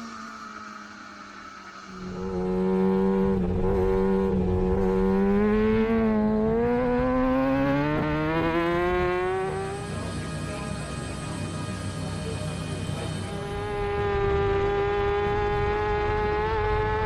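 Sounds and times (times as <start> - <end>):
motorcycle engine at high revs: 1.9 - 17.0.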